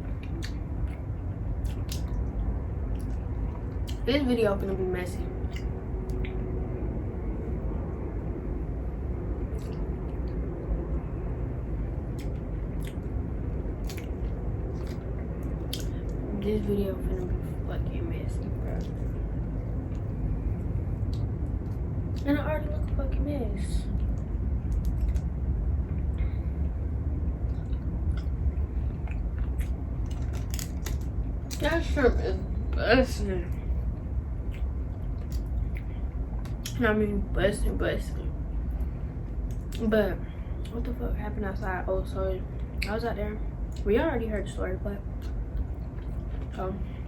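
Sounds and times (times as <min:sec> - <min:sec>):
chewing food: 0:00.0 - 0:04.1, 0:12.0 - 0:16.2, 0:18.4 - 0:23.0, 0:23.8 - 0:26.6, 0:27.3 - 0:31.8, 0:33.5 - 0:36.8, 0:45.2 - 0:47.0
low rumble: 0:00.0 - 0:47.0
steady low hum: 0:00.0 - 0:47.0
person chewing shrimp: 0:13.8 - 0:16.0, 0:27.4 - 0:31.1.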